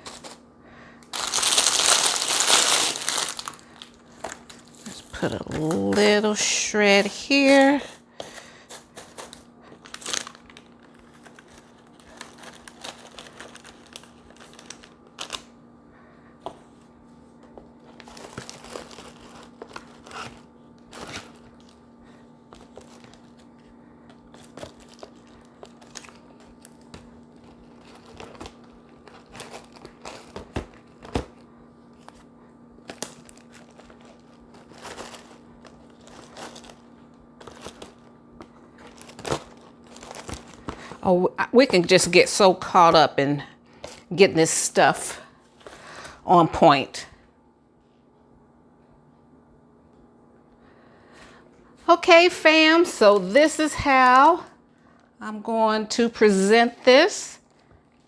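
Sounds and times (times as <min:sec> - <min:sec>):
paper shred rustling and crinkling: 0:00.0 - 0:00.4, 0:01.1 - 0:15.5, 0:17.8 - 0:41.0.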